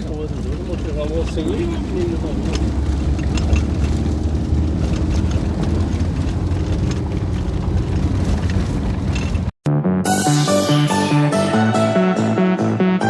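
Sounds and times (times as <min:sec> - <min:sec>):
vehicle engine rumble from inside: 0:00.0 - 0:09.6.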